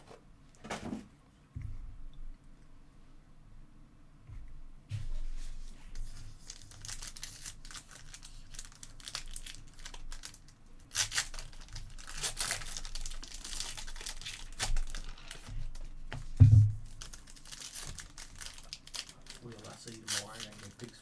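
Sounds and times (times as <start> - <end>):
wrappers tearing and crinkling: 6.0 - 16.0, 16.8 - 21.0.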